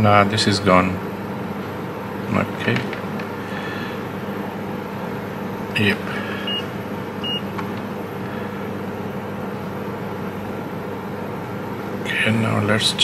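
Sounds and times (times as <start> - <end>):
bench equipment hum: 0.0 - 13.0
multimeter beep: 6.5 - 7.5.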